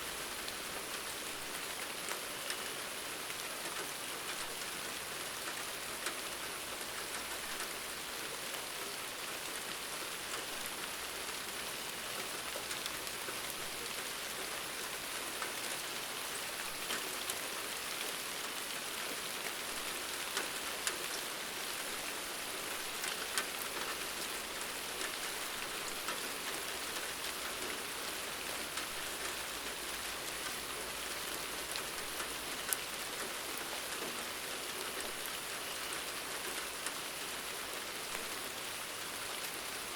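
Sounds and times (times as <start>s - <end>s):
steady rain falling: 0.0s - 39.9s
raindrop ticks: 3.4s - 4.7s, 5.4s - 7.8s, 19.4s - 21.2s, 22.6s - 37.0s, 38.0s - 38.4s.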